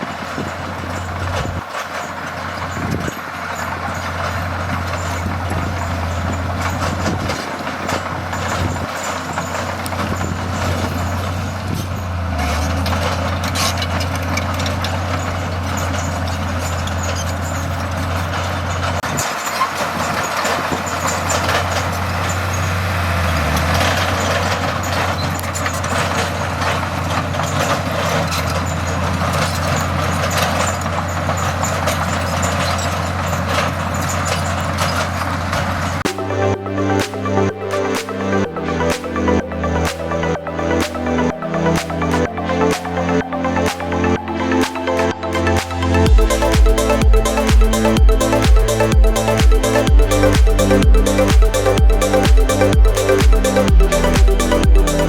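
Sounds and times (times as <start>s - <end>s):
diesel engine drone: 0.0s - 19.0s, 19.8s - 27.9s, 36.0s - 55.0s.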